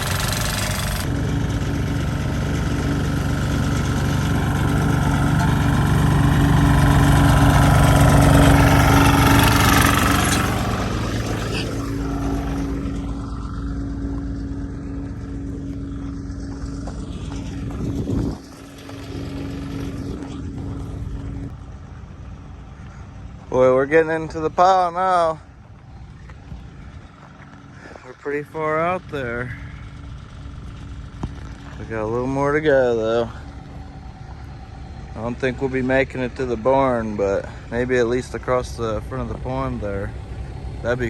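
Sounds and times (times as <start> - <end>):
heavy equipment engine running: 0.0 - 41.0.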